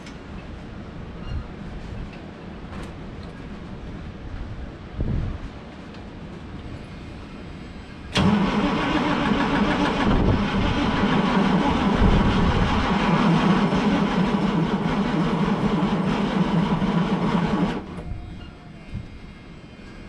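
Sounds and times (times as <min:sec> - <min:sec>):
starter cranking diesel engine: 0:08.1 - 0:18.2.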